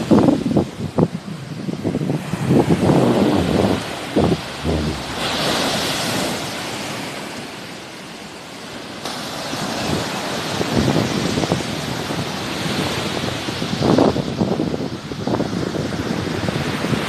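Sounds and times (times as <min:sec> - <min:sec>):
wind buffeting microphone: 0:00.0 - 0:06.6
sea waves surf hiss: 0:01.6 - 0:06.8.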